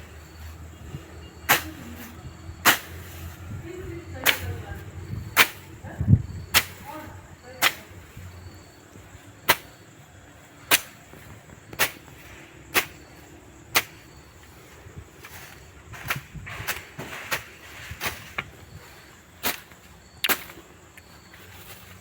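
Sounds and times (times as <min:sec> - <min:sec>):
chopping strikes: 0:10.7 - 0:11.1.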